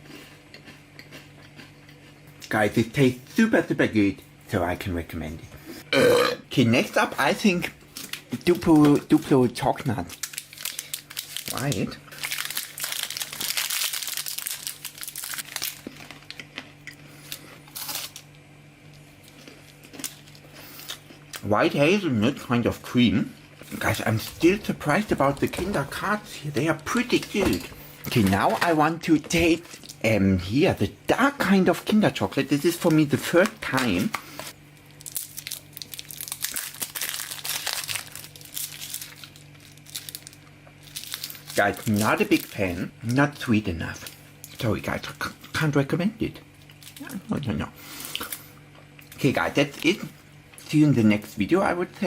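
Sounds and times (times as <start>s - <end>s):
low steady hum: 0.0s - 52.0s
plastic wrapper crinkling: 9.8s - 18.3s, 23.7s - 30.0s, 32.8s - 42.8s.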